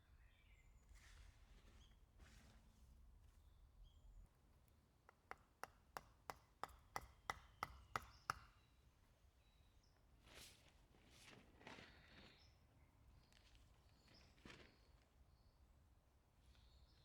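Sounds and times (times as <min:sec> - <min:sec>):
hammer striking tent peg: 0:05.1 - 0:08.5.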